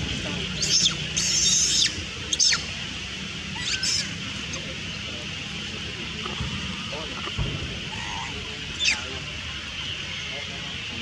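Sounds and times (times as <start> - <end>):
young monkey squealing: 0.6 - 2.7, 3.6 - 4.2, 7.9 - 9.1.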